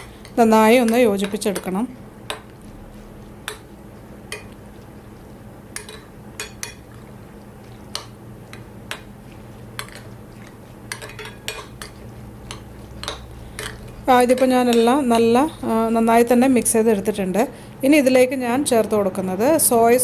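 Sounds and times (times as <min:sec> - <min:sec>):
spoon clinking against bowl: 0:10.9 - 0:14.9.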